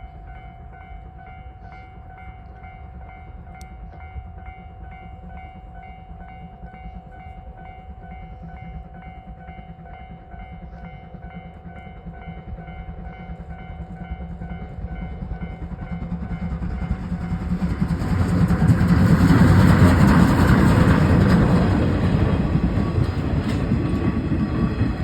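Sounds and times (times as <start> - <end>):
train rumbling: 0.0 - 25.0.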